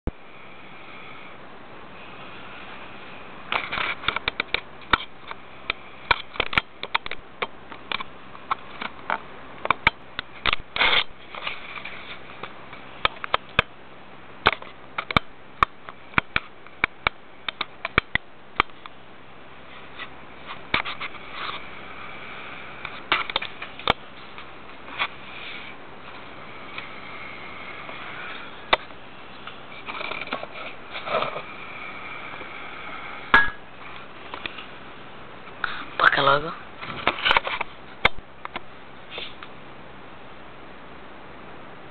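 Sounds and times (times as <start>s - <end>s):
steady hiss: 0.1s - 41.9s
clicks and crackles: 3.5s - 13.7s, 14.4s - 19.0s, 22.8s - 31.5s, 36.8s - 39.6s.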